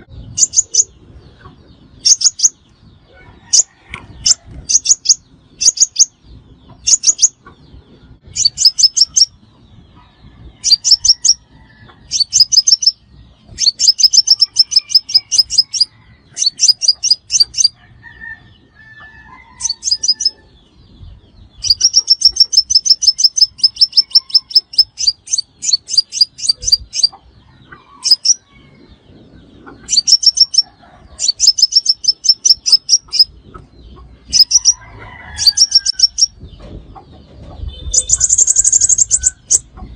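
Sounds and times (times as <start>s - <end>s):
bird singing high trills: 0.0s - 7.4s, 8.1s - 9.4s, 10.6s - 20.6s, 21.5s - 27.2s, 29.8s - 33.3s, 34.3s - 34.8s, 37.6s - 39.7s.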